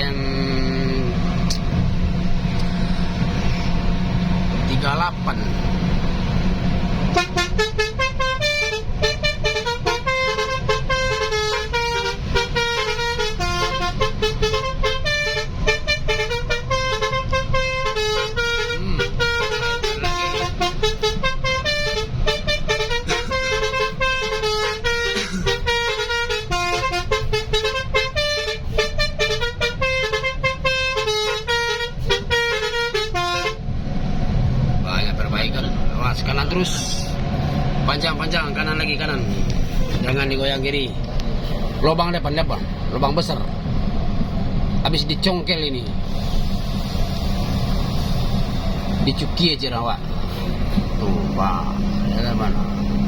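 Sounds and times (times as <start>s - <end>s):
bus melody horn playing: 7.0s - 33.7s.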